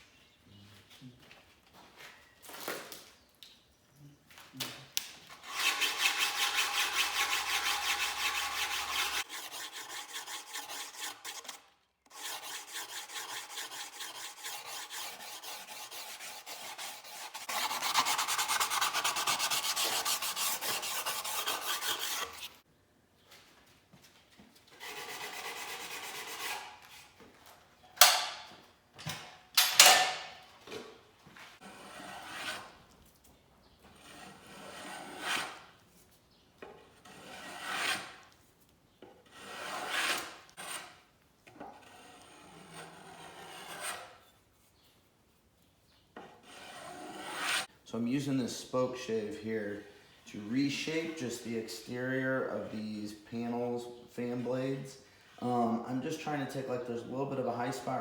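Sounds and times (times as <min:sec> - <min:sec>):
hand tool scraping wood: 0:05.3 - 0:22.6, 0:24.7 - 0:27.2, 0:31.6 - 0:33.0, 0:33.9 - 0:35.8, 0:36.6 - 0:38.4, 0:39.0 - 0:44.4, 0:46.2 - 0:47.7.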